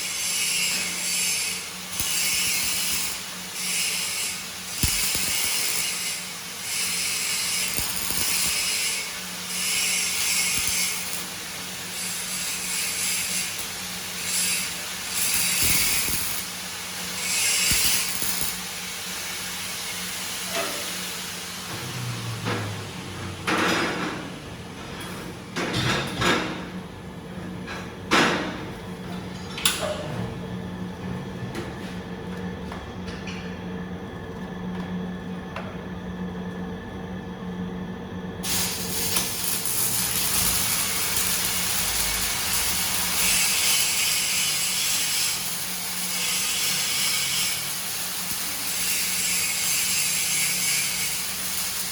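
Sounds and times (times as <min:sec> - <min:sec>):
welding arc hissing and crackling: 0:00.0 - 0:21.8, 0:38.4 - 0:51.9.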